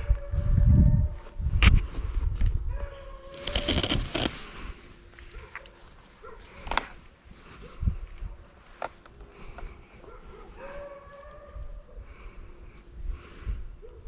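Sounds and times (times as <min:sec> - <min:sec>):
hounds baying: 0:05.2 - 0:06.6, 0:09.2 - 0:12.2.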